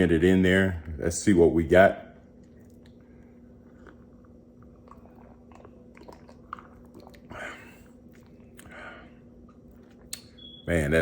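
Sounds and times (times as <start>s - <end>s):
lip and tongue clicks: 2.4s - 8.8s, 9.4s - 10.5s
man sipping and swallowing: 2.4s - 10.2s.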